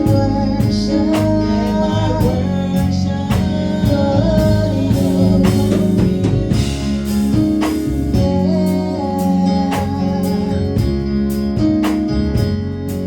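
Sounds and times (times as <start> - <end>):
steady drum beat: 0.0 - 13.0.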